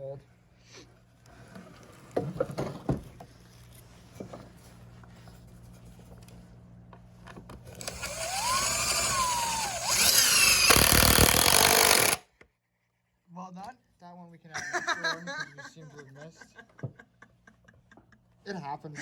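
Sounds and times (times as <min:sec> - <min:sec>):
power drill whirring: 0:07.7 - 0:12.3.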